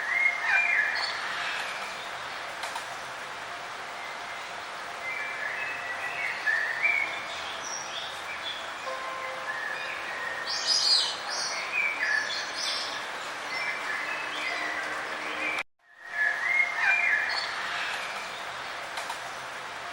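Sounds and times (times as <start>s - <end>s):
small birds chirping: 3.9s - 15.6s.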